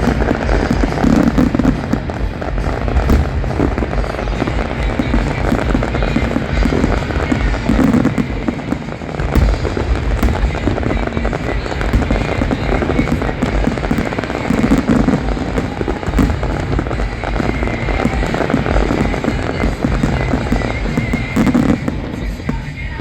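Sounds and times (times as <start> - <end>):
fireworks booms and crackling: 0.0 - 23.0.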